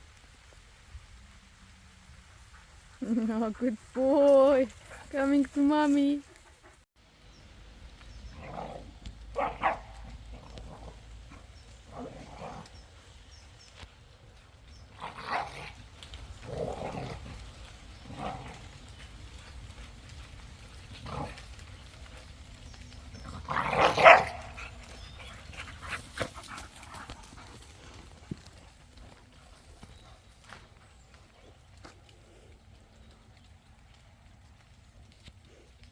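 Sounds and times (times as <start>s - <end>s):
dogs barking: 8.2s - 12.8s, 23.4s - 25.0s.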